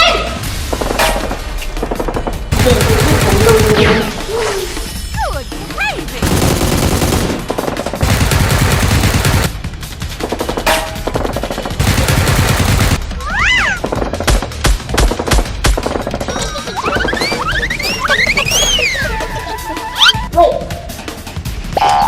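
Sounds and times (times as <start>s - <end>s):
automatic gunfire bursts: 2.5s - 4.0s, 6.2s - 9.5s, 11.8s - 13.0s.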